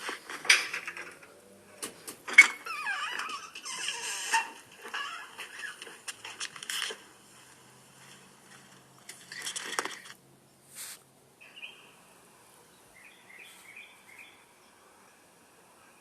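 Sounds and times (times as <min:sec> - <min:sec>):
rattling noise: 0:00.0 - 0:10.2
short hiss: 0:10.7 - 0:11.1.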